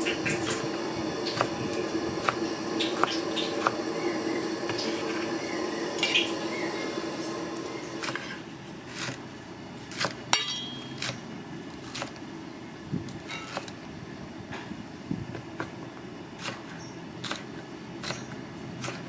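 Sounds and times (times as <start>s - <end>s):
dishes and utensils clinking: 10.4s - 11.0s.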